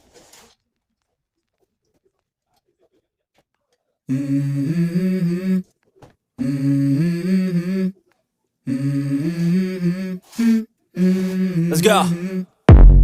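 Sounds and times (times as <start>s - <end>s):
sung vocal phrases: 4.1s - 5.7s, 6.4s - 8.0s, 8.7s - 12.7s.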